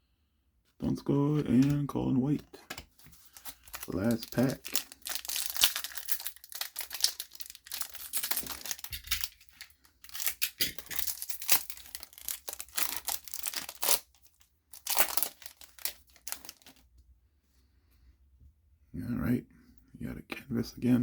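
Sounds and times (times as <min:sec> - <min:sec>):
foil wrapper tearing and crinkling: 0:01.5 - 0:16.8.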